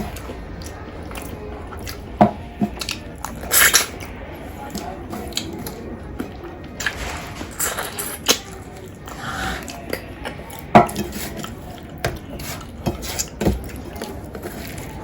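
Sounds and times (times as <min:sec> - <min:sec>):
cutlery clinking on a plate: 0:10.6 - 0:12.2.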